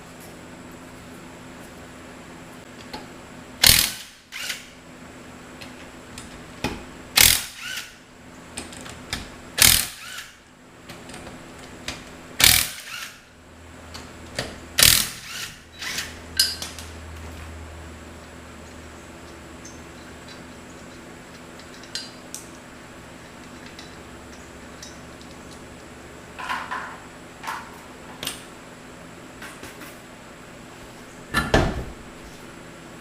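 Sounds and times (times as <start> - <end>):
ratchet clicks: 7.2 - 7.9, 9.6 - 10.3.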